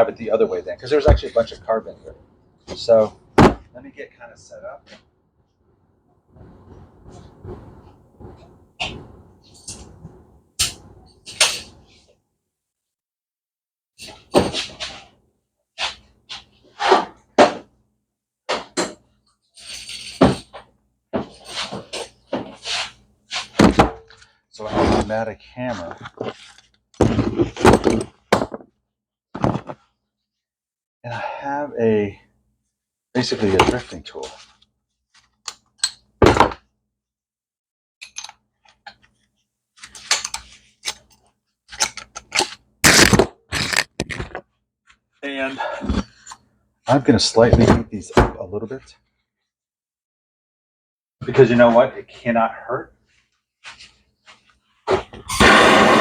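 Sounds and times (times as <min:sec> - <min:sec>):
metal tools knocking and clinking: 0:38.0 - 0:38.4.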